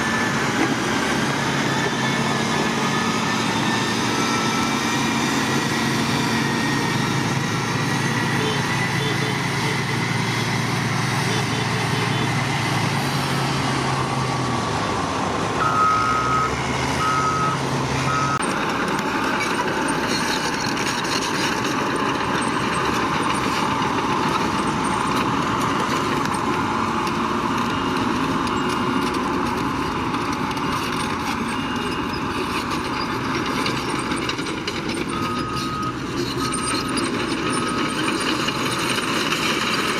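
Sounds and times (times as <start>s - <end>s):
heavy machinery engine running: 0.0s - 39.9s
reversing alarm beeping: 1.6s - 10.0s, 15.6s - 18.5s, 22.3s - 39.9s.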